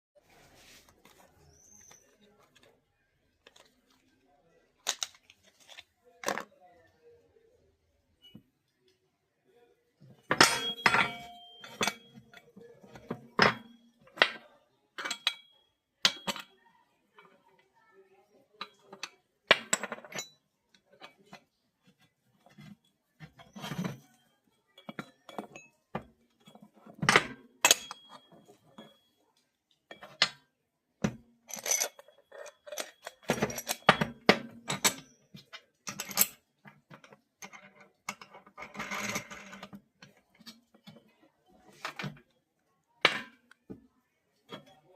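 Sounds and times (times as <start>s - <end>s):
metallic clinks and knocks: 10.1s - 14.4s, 15.0s - 16.6s, 18.6s - 21.4s, 22.4s - 29.1s, 31.1s - 41.0s.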